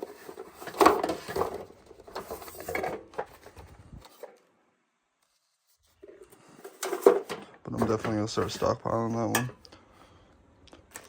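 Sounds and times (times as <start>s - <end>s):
hard objects knocking and clattering: 0.0s - 4.3s, 6.0s - 8.6s.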